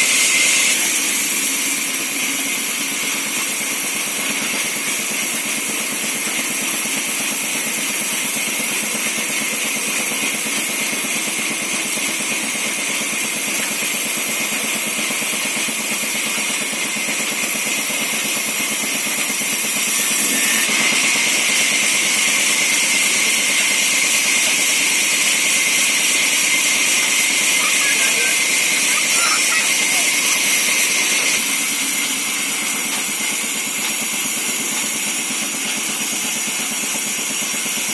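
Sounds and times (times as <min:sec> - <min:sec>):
sawmill saw whirring: 0:00.0 - 0:37.9.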